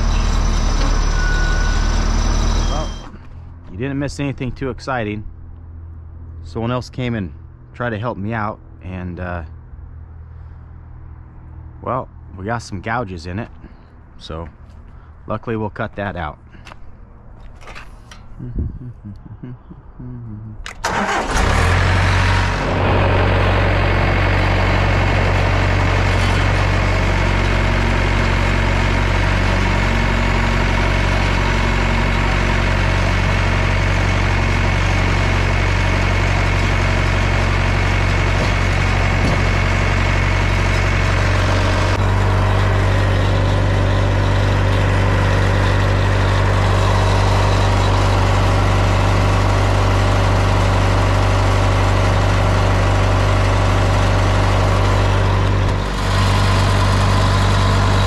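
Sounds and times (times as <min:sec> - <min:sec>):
portable sawmill running: 0:20.8 - 0:58.0.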